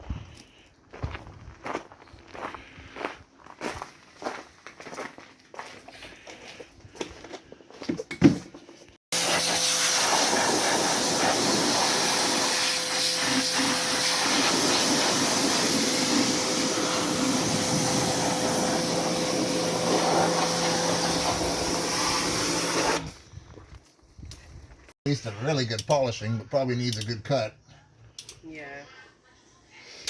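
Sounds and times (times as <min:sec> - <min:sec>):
motor hum: 0:16.7 - 0:23.0.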